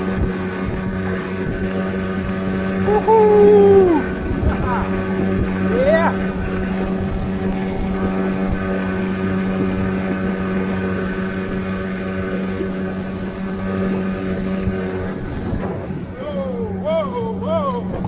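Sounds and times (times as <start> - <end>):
outboard motor running: 0.0 - 18.0.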